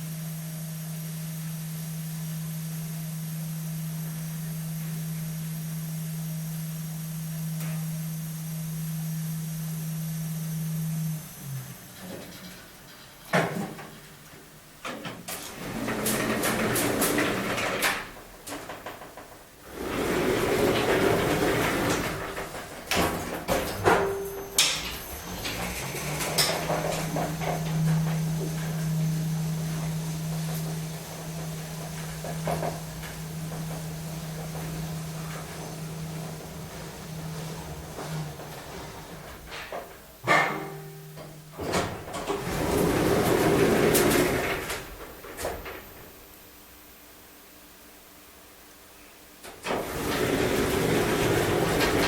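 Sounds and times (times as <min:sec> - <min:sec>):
elevator drive humming: 0:00.0 - 0:52.0
mechanical clunks and clicks: 0:20.7 - 0:36.4.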